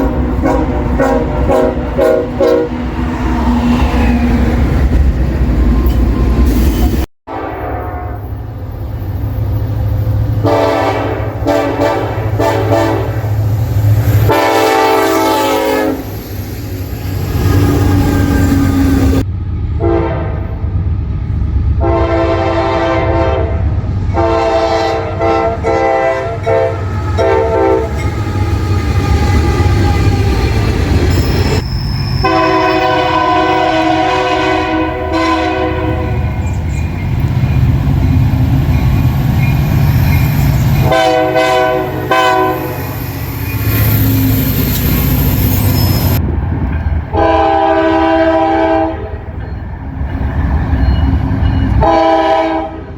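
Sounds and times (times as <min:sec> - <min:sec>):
locomotive air horn blasts: 0:00.0 - 0:02.8, 0:07.3 - 0:08.4, 0:10.4 - 0:13.3, 0:14.3 - 0:16.2, 0:19.8 - 0:20.5, 0:21.8 - 0:23.6, 0:24.2 - 0:28.1, 0:32.2 - 0:36.4, 0:40.8 - 0:42.9, 0:47.1 - 0:49.2, 0:51.8 - 0:52.9
running train rumble: 0:00.0 - 0:52.9.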